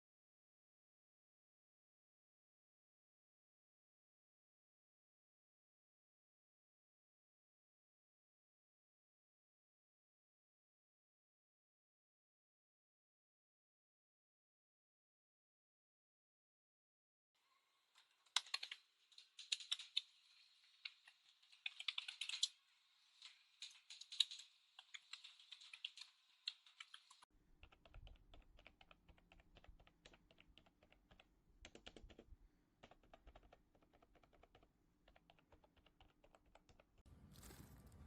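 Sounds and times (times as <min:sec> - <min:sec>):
keyboard keystroke clicks: 0:23.6 - 0:37.0.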